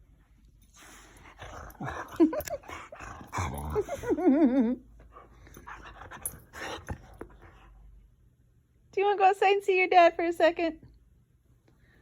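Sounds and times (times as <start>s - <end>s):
dog grumbling and yelping: 1.2s - 4.4s.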